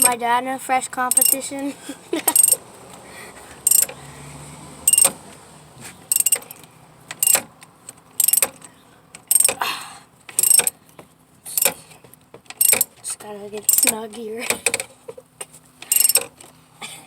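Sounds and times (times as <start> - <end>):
socket ratchet clicking: 1.1 - 1.4, 2.3 - 2.6, 3.7 - 4.0, 4.9 - 5.2, 6.1 - 7.5, 8.2 - 9.6, 10.3 - 10.8, 11.6 - 11.8, 12.5 - 13.0, 13.6 - 14.0, 15.8 - 16.5.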